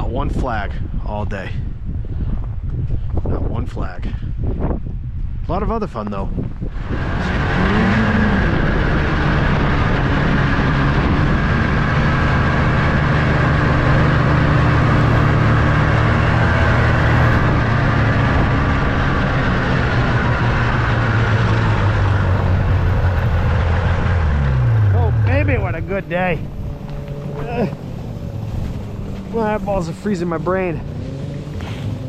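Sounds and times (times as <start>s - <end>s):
small vehicle engine running: 6.7s - 32.0s.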